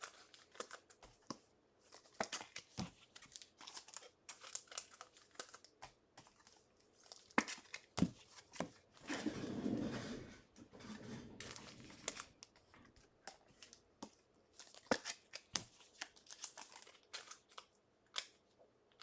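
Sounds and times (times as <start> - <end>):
plastic wrappers crinkling: 1.9 - 9.2, 14.5 - 19.0
wrapper tearing rustle: 14.6 - 18.4.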